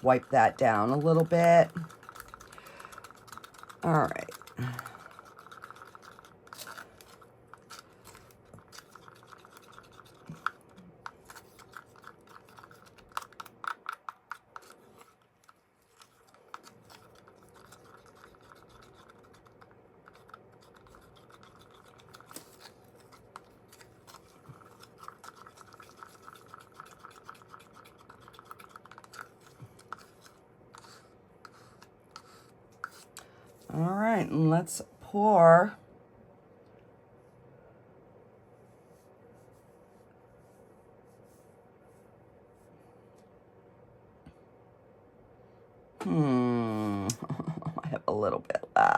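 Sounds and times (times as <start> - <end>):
faint scratching and rubbing: 38.6 - 42.7.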